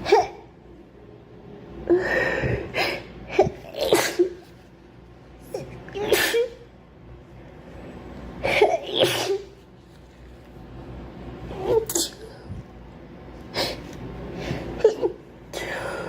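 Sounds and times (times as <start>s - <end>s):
girl sneezing: 2.8s - 4.4s, 6.0s - 6.6s, 8.4s - 9.6s.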